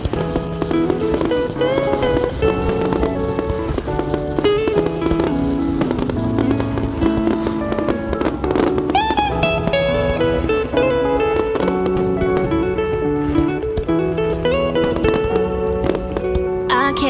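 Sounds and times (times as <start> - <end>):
pop-rock guitar instrumental: 0.0 - 17.0.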